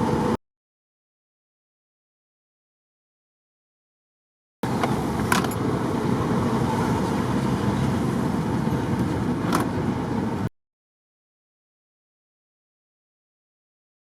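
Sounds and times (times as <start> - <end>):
bus engine and road rumble: 0.0 - 0.4, 4.6 - 10.5.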